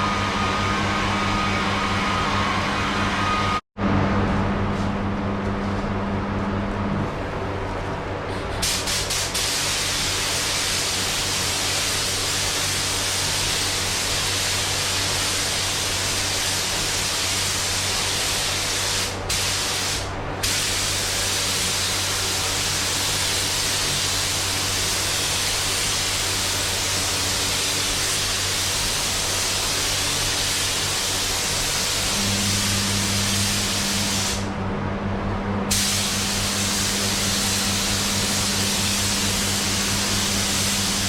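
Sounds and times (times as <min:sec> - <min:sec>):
steady low hum: 0:00.0 - 0:09.0, 0:31.3 - 0:41.0
paint spray gun hissing: 0:35.7 - 0:41.0.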